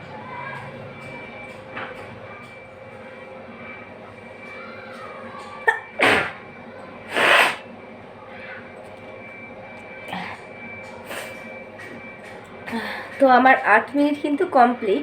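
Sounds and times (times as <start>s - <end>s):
woman sneezing: 5.7s - 6.4s, 7.1s - 7.6s.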